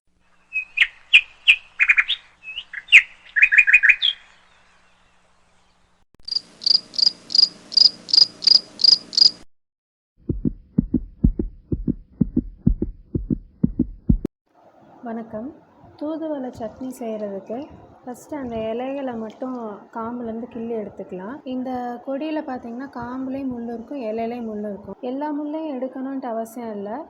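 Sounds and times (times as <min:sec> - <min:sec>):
bird-like chirping: 0:00.3 - 0:05.0, 0:05.6 - 0:09.4
quick high insect-like chirps: 0:06.3 - 0:09.4
low regular thumps: 0:10.2 - 0:14.3, 0:15.8 - 0:21.9, 0:22.6 - 0:24.4.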